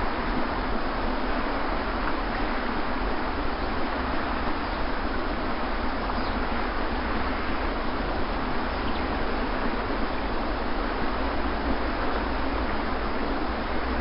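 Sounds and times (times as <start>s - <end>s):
surf washing on beach: 0.0s - 14.0s.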